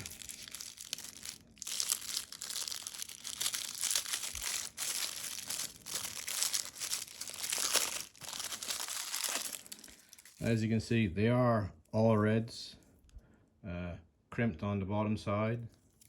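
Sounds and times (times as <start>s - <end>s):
paper wrapping crinkling and tearing: 0.0s - 10.6s.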